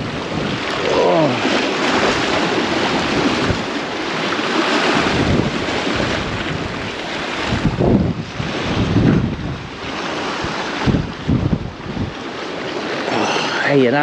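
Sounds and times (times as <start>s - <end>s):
sea surf: 0.0s - 14.0s
strong wind buffeting microphone: 0.0s - 14.0s.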